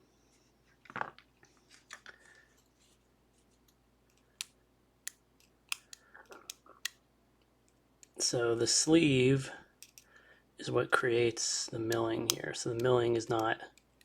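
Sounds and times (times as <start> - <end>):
small metal lock parts clicking: 9.8 - 10.1.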